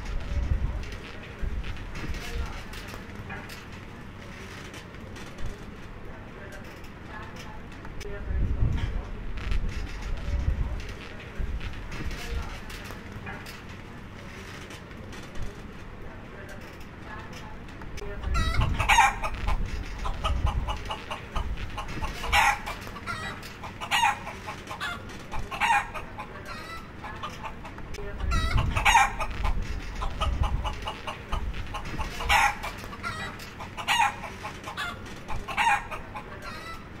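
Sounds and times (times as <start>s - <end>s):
hens clucking: 18.0s - 37.0s.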